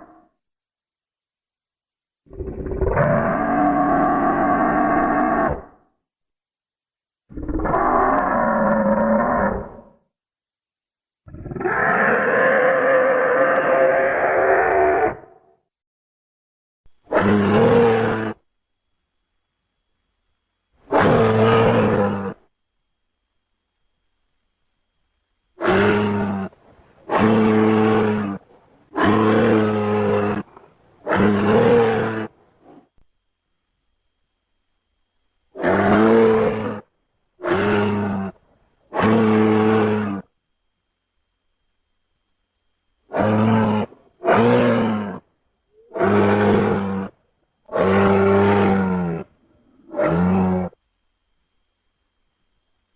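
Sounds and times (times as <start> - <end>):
low creature roars: 2.3 - 5.9, 7.3 - 10.0, 11.3 - 15.6, 17.1 - 18.4, 20.9 - 22.4, 25.6 - 32.9, 35.6 - 40.3, 43.1 - 50.8.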